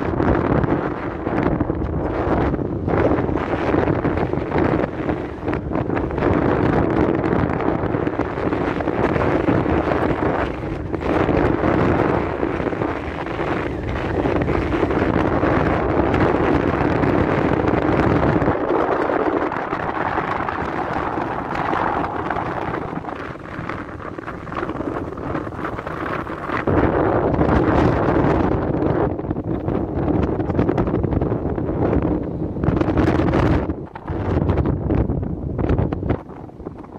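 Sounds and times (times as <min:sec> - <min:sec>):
strong wind buffeting microphone: 0:00.0 - 0:36.9.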